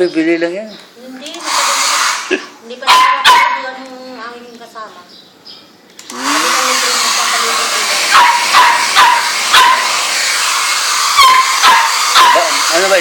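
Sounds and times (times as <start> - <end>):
small dog yapping: 2.8 - 3.8, 8.1 - 10.0, 11.1 - 12.7.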